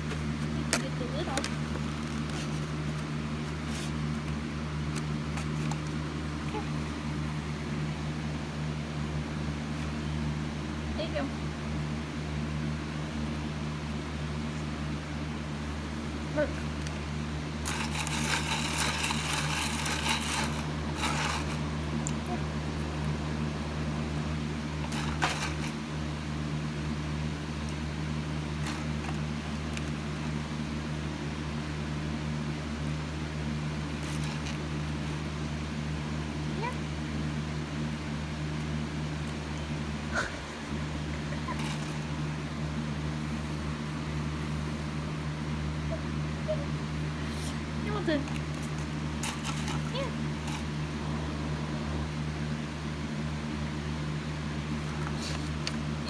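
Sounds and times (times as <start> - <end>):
scratchy hissy rustling: 0.0 - 4.3, 17.5 - 22.9, 24.8 - 25.8, 54.8 - 55.8
low mechanical hum: 0.0 - 56.0.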